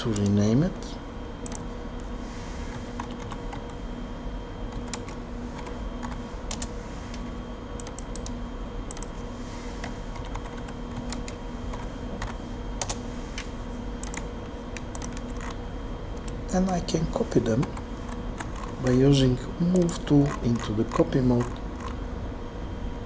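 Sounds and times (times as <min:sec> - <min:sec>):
low electrical hum: 0:00.0 - 0:23.0
typing on keyboard: 0:01.4 - 0:01.6, 0:04.7 - 0:06.7, 0:07.8 - 0:09.1, 0:14.0 - 0:15.6.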